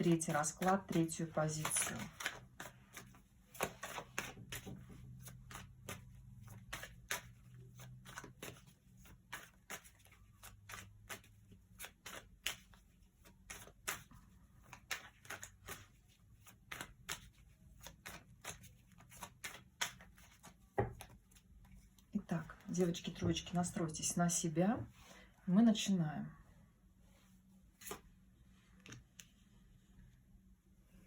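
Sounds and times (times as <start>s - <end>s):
cards shuffling: 0.0s - 22.0s, 27.8s - 28.1s.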